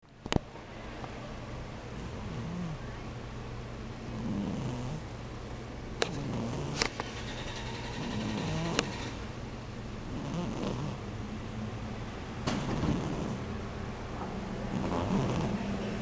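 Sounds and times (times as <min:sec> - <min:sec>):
cat snoring: 0:02.0 - 0:02.9, 0:04.0 - 0:05.2, 0:06.1 - 0:09.2, 0:10.1 - 0:11.0, 0:12.6 - 0:13.5, 0:14.7 - 0:15.6.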